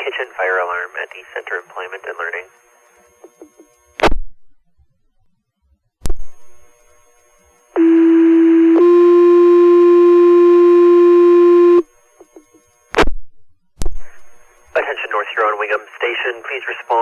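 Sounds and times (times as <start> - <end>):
two-tone radio page: 0.0 - 2.5, 14.8 - 17.0.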